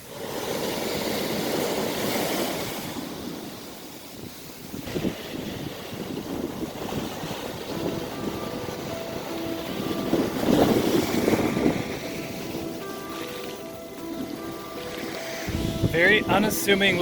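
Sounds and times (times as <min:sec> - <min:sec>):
ocean surf: 0:00.0 - 0:17.0
wind buffeting microphone: 0:00.1 - 0:17.0.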